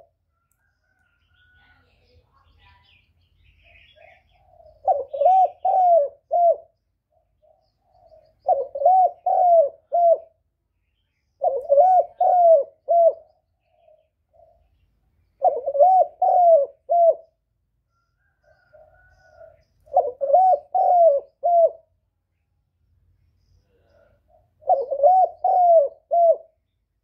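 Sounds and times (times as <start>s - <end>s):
dove cooing: 3.6s - 10.4s, 11.4s - 14.8s, 15.4s - 17.4s, 18.2s - 22.0s, 23.8s - 26.6s.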